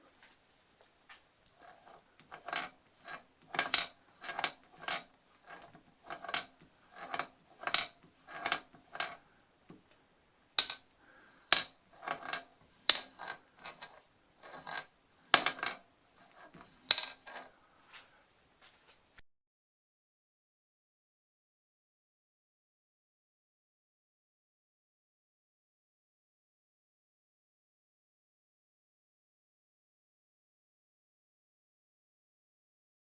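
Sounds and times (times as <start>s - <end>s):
metal objects clinking: 1.6s - 9.2s, 10.6s - 10.9s, 11.5s - 17.5s.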